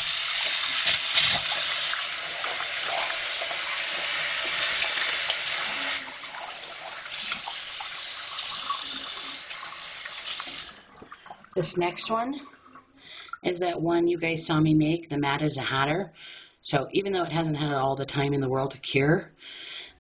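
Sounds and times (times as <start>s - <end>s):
tap water running into sink: 0.0s - 13.0s.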